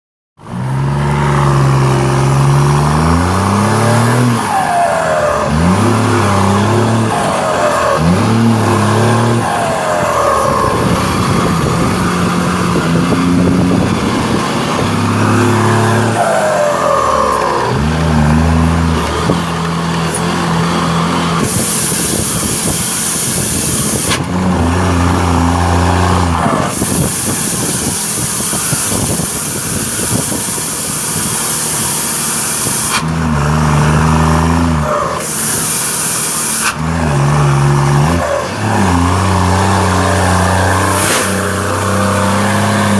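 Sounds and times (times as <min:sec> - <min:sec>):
truck diesel engine revving: 0:00.4 - 0:42.9.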